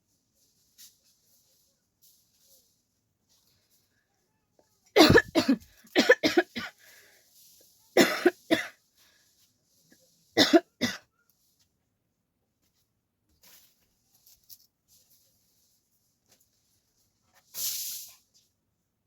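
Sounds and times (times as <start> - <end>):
person coughing harshly: 5.0 - 6.7, 8.0 - 8.7, 10.4 - 11.1.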